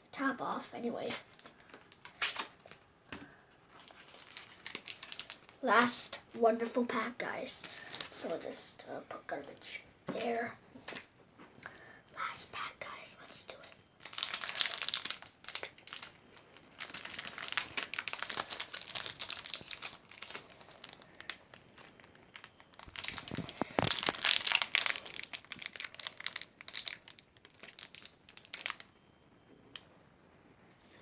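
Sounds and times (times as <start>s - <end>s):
foil wrapper crinkling: 1.2s - 6.2s, 7.6s - 8.5s, 13.2s - 28.9s.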